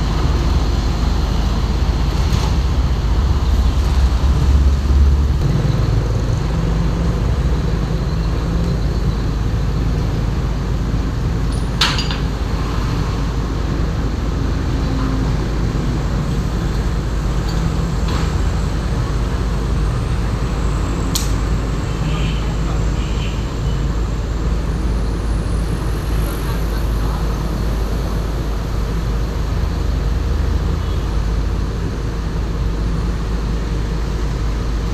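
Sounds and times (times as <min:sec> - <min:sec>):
heavy diesel engines running: 0:00.0 - 0:34.9
road traffic: 0:00.0 - 0:34.9.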